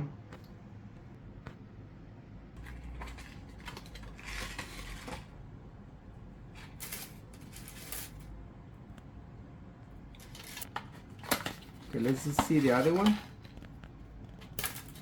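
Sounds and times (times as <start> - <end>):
cable handling clicks and scrapes: 10.1 - 15.0.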